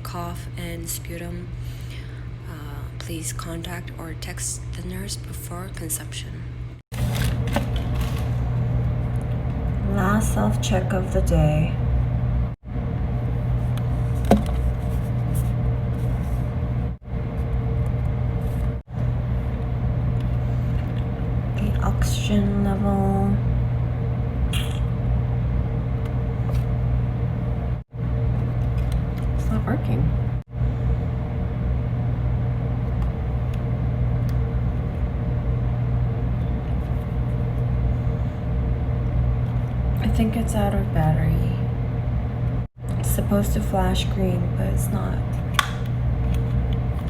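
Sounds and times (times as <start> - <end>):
low mechanical hum: 0.0 - 47.0.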